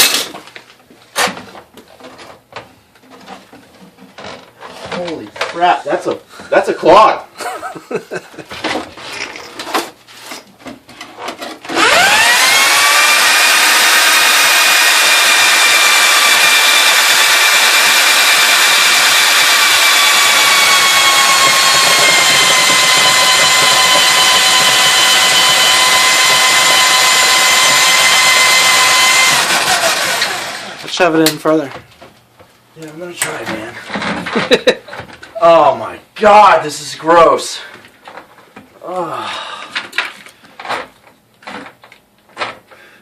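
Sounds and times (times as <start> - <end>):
drain snake motor whining: 11.7 - 30.8.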